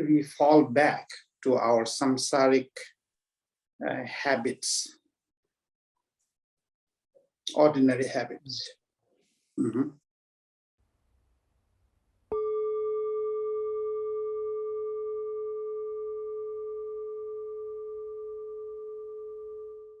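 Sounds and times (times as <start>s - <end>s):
singing bowl ringing: 12.3s - 20.0s.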